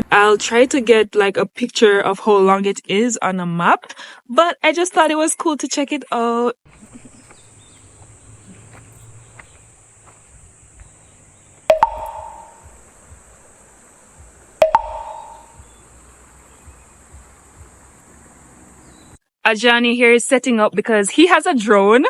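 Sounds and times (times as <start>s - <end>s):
faint outdoor background noise: 0.0s - 22.0s
sharp ringing strikes: 11.7s - 12.8s, 14.6s - 15.7s.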